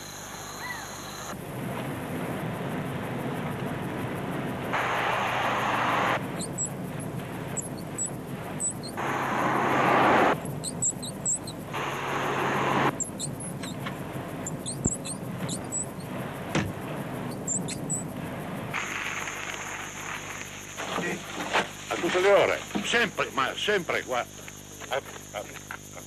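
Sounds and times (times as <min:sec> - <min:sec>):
low hum: 0:00.0 - 0:21.3
rushing sounds: 0:01.5 - 0:10.6
car high-pitched squeaks: 0:04.8 - 0:16.2, 0:17.3 - 0:18.1.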